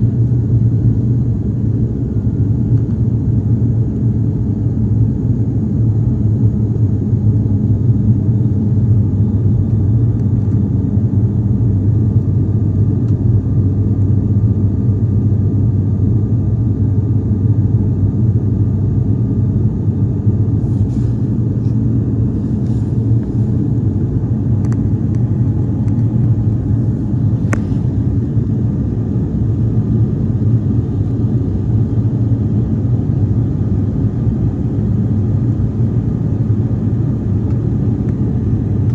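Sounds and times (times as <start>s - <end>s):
aircraft engines droning in cabin: 0.0s - 38.9s.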